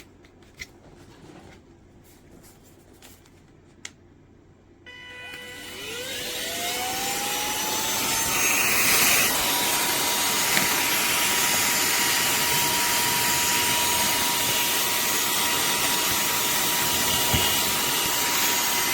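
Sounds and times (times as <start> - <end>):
handheld vacuum motor whine: 4.9 - 18.9.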